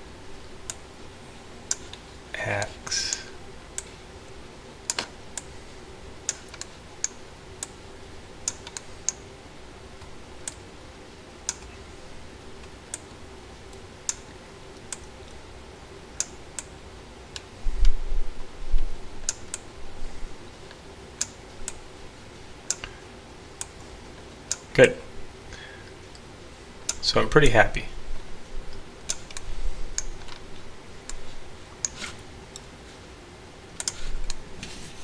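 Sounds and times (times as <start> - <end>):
steady low hum: 0.0 - 35.0
keyboard and mouse clicks: 1.7 - 2.0, 33.8 - 34.4.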